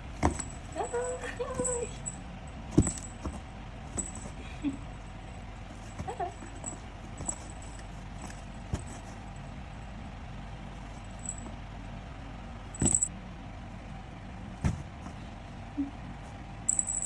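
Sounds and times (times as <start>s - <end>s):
small metallic jingles: 0.0s - 10.0s, 10.8s - 11.8s, 12.6s - 13.2s, 16.6s - 17.0s
steady low hum: 0.0s - 17.0s.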